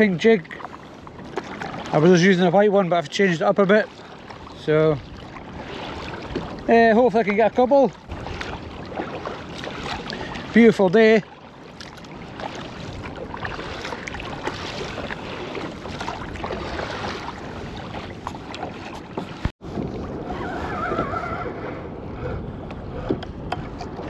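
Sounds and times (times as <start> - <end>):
water lapping against hull: 0.0 - 24.0
wind on microphone: 4.4 - 10.6, 12.0 - 24.0.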